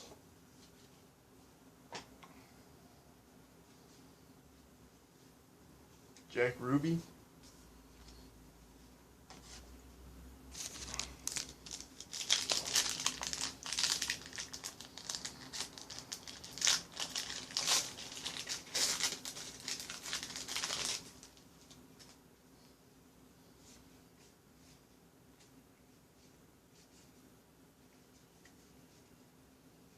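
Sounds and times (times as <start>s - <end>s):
wrapper crinkling and tearing: 10.5s - 21.4s.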